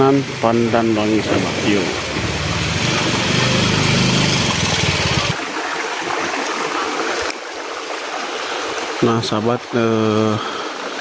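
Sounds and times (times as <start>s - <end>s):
flowing water: 0.0s - 11.0s
small engine running: 1.1s - 5.4s.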